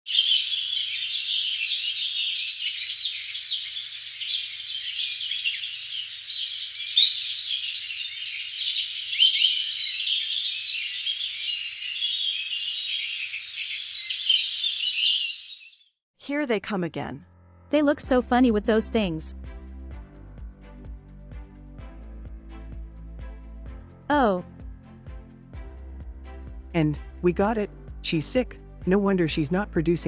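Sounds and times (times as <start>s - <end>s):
small birds chirping and twittering: 0.1s - 15.9s.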